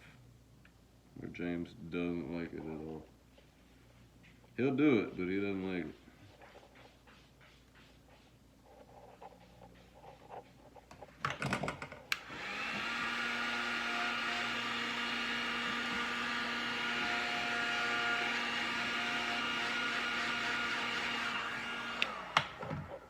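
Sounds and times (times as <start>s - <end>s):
heat gun blowing hiss and whine: 12.1s - 23.0s.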